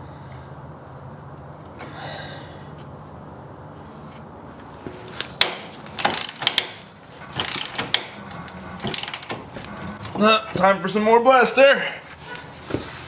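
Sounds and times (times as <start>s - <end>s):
ratchet wrench clicking: 5.2s - 9.5s.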